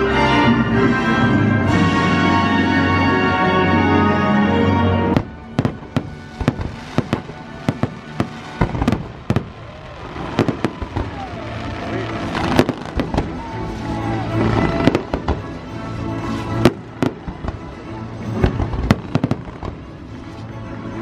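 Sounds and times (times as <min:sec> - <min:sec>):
show music: 0:00.0 - 0:21.0
fireworks bursting and cracking: 0:05.1 - 0:20.6.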